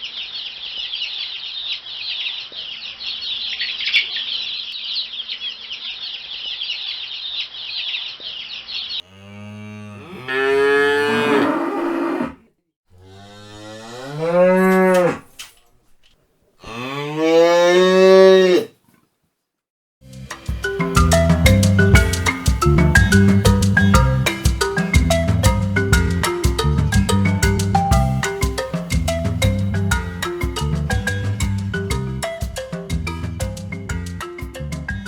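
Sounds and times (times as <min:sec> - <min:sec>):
cow mooing: 0:09.0 - 0:12.4, 0:13.0 - 0:15.3, 0:16.6 - 0:18.7.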